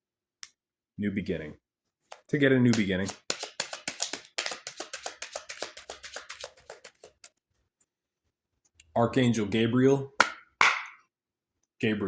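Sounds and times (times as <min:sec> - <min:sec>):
cards being shuffled: 0:02.1 - 0:07.3.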